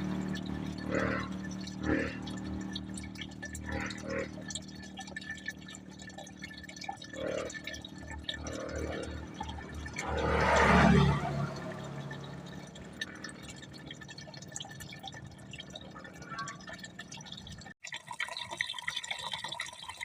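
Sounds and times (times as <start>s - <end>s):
low hum: 0.0s - 17.7s
water dripping from faucet: 0.0s - 20.0s.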